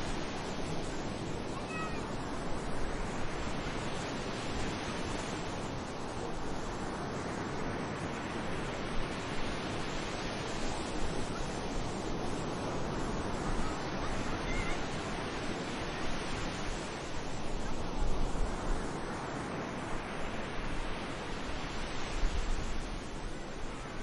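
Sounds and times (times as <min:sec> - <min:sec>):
waves washing onto beach: 0:00.0 - 0:24.0
wind on microphone: 0:00.0 - 0:24.0.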